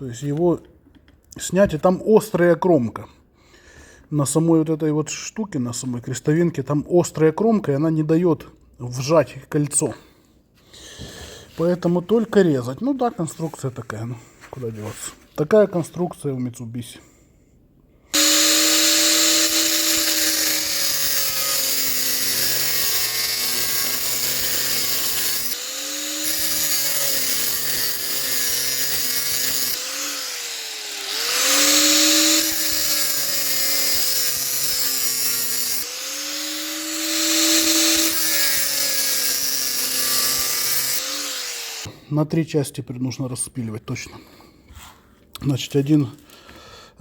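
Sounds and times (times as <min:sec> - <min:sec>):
angle grinder cutting steel: 0:18.1 - 0:41.9.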